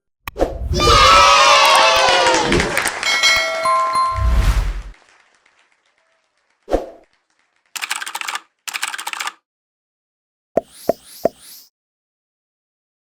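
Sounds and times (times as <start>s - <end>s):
clicks with rising swish: 4.1s - 5.0s.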